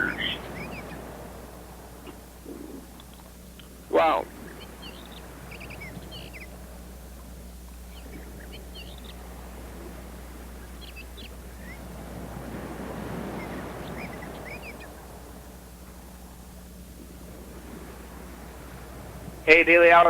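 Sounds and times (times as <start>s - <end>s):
small birds chirping: 0.0s - 1.2s, 1.8s - 12.0s, 13.1s - 15.4s
low electrical hum: 0.0s - 20.0s.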